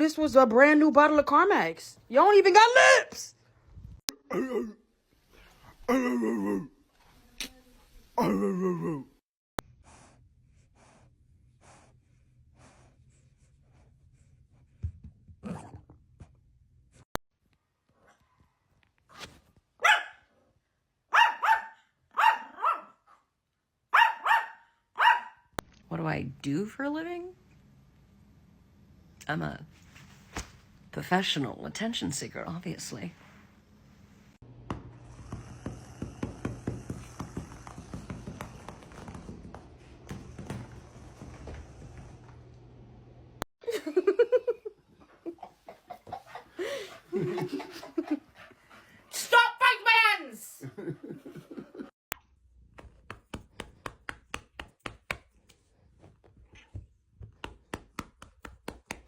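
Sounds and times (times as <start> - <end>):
dog barking: 19.8 - 20.3, 21.1 - 23.2, 23.9 - 25.5
person laughing: 43.6 - 48.2, 50.6 - 51.9.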